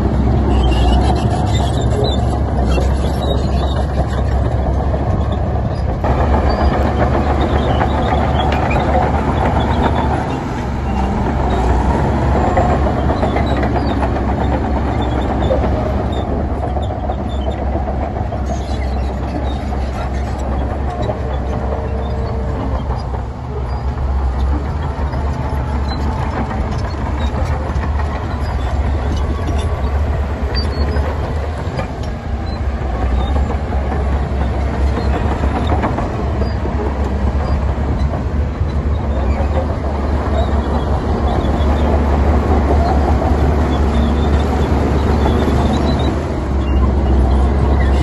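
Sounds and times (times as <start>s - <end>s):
heavy diesel machinery rumbling: 0.0s - 48.0s.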